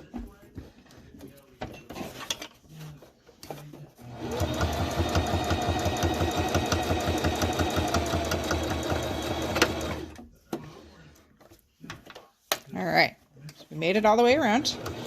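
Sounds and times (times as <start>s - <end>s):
sewing machine stitching: 4.0s - 10.2s, 14.4s - 15.0s.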